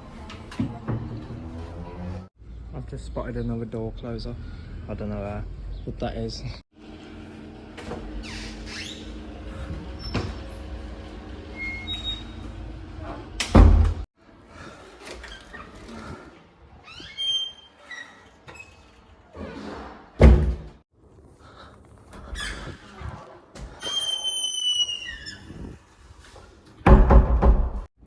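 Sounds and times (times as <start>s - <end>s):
faint squeaks: 11.5s - 13.2s, 15.0s - 20.2s, 22.2s - 26.2s
door thudding shut: 13.4s - 14.0s, 20.2s - 20.8s, 26.9s - 27.9s.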